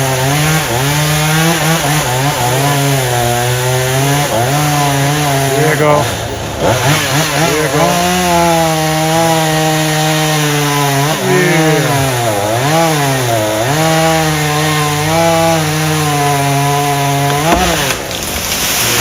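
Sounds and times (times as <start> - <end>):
chainsaw cutting wood: 0.0 - 19.0.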